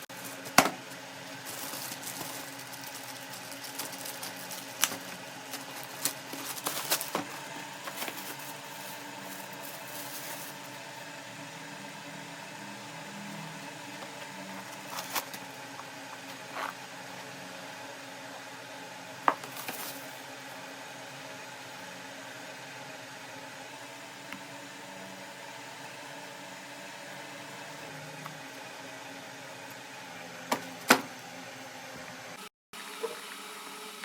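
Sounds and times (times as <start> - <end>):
fan motor hum: 0.0 - 34.0
packaging clicking and crinkling: 1.4 - 10.6.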